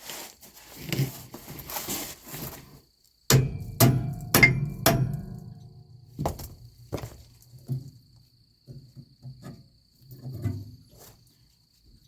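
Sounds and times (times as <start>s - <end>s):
hammer blows on steel: 3.3s - 5.9s.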